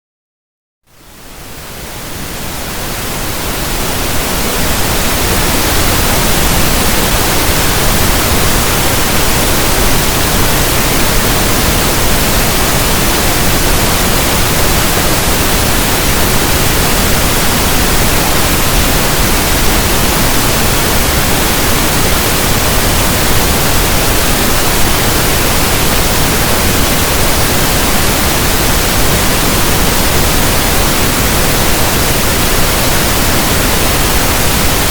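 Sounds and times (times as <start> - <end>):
pink noise hiss: 0.9 - 34.9.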